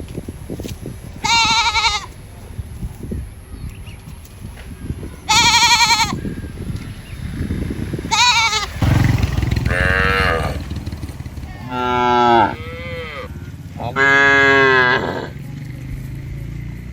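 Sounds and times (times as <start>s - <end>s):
livestock bleating: 1.2s - 2.2s, 5.3s - 6.3s, 8.1s - 8.8s, 9.7s - 10.6s, 11.5s - 15.4s.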